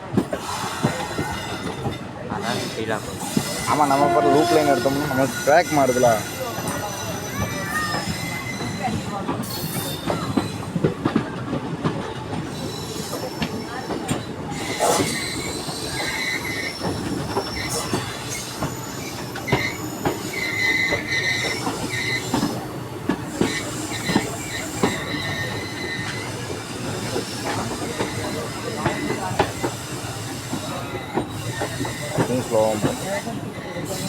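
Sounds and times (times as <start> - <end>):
train wheels clacking over rail joints: 0.0 - 34.0
high flange squeal: 14.6 - 29.2.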